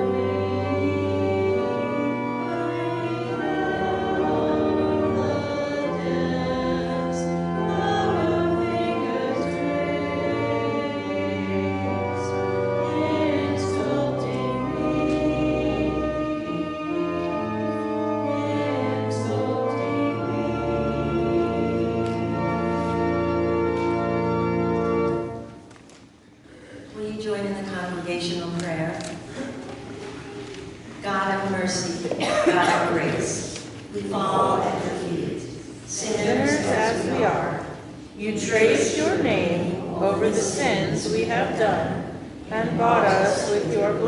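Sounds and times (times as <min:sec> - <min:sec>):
congregation singing a hymn: 0:00.0 - 0:25.6, 0:31.4 - 0:44.0
organ: 0:00.0 - 0:25.7.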